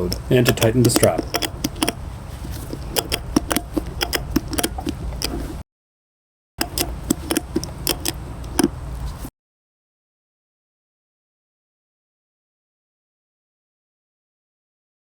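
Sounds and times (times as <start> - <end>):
ratchet strap pawl clicking: 0.0 - 5.5, 6.6 - 8.8
steady low hum: 0.0 - 5.6, 6.6 - 9.3.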